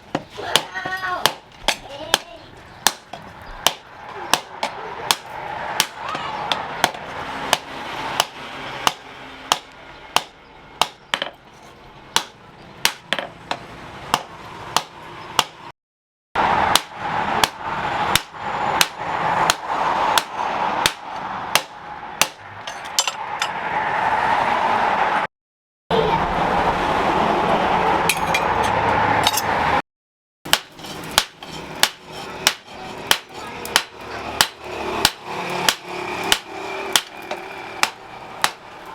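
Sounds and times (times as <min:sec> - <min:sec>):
hammer striking steel on anvil: 0:20.2 - 0:23.6, 0:30.5 - 0:38.7.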